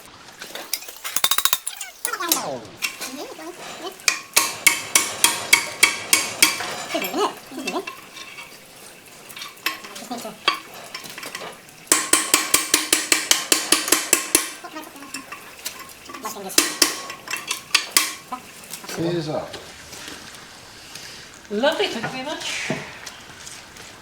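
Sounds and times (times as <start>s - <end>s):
rapid metal-on-metal knocking: 1.1s - 19.0s.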